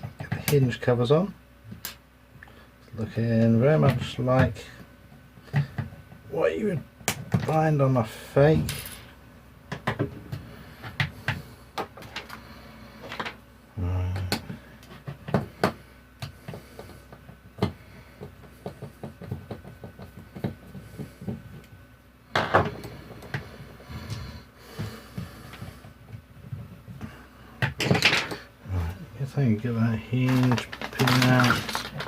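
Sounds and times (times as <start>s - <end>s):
plastic cracking: 30.2s - 32.0s.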